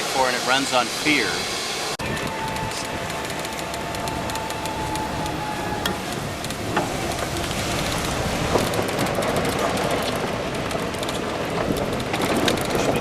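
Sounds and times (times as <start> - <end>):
rattles: 2.0 - 9.3
golf cart rumbling: 2.0 - 12.0.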